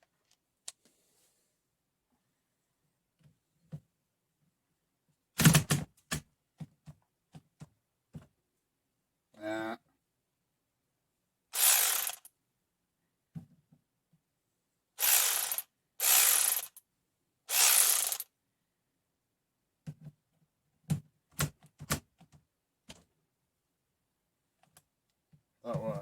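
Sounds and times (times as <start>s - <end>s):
electric ratchet running: 11.6s - 12.3s, 15.0s - 16.8s, 17.5s - 18.2s.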